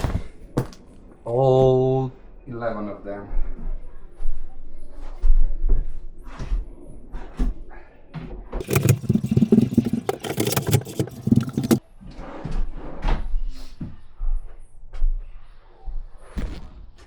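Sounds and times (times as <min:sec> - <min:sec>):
drawers rattling on runners: 0:08.6 - 0:11.8.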